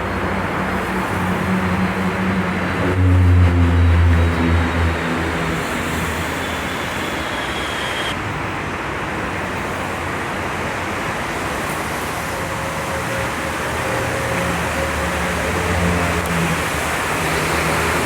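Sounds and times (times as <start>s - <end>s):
metro train rolling: 0.0s - 18.0s
low motor hum: 1.6s - 6.7s
thin high whine: 2.8s - 8.2s.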